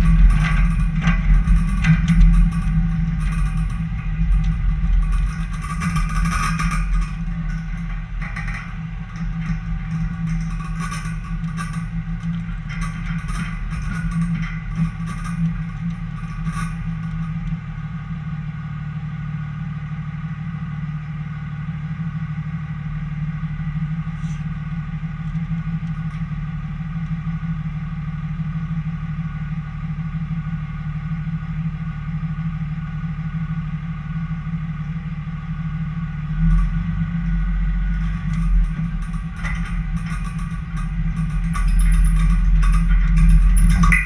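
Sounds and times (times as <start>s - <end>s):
car engine and road noise: 0.0s - 44.0s.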